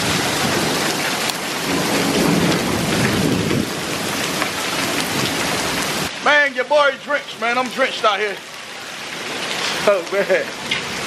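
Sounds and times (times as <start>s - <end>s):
heavy rain and hail: 0.0s - 11.0s.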